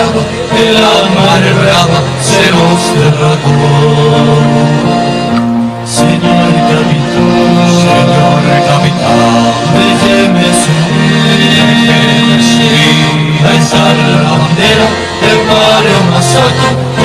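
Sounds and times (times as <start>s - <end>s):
group singing: 0.0s - 17.0s
guitar accompaniment: 0.0s - 17.0s.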